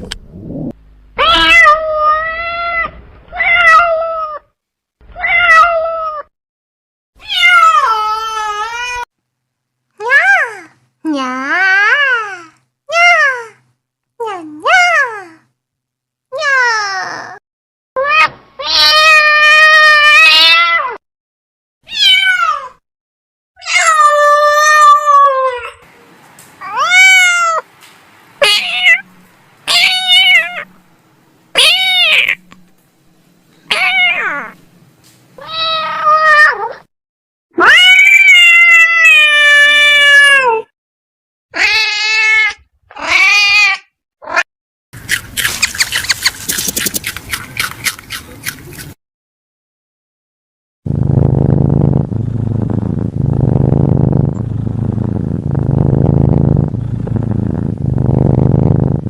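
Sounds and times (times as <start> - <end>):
cats meowing: 1.2 - 4.4, 28.4 - 29.1, 29.7 - 30.7, 33.7 - 34.6, 35.4 - 36.8
noisy rustle: 50.9 - 59.0.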